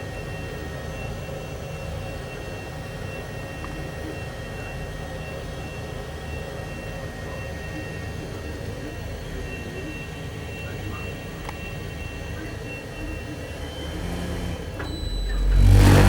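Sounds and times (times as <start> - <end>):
thin whining tones: 13.0 - 16.0
heater low rumbling: 13.4 - 16.0.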